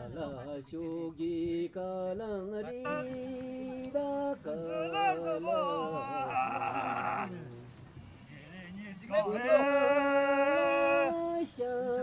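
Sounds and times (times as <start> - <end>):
voices singing slow chant: 0.6 - 12.0.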